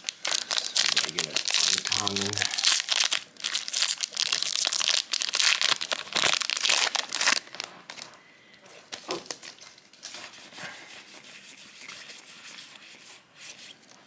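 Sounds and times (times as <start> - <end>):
wrapper crinkling and tearing: 0.0 - 8.1, 8.9 - 10.2
cards rustling: 0.1 - 5.0.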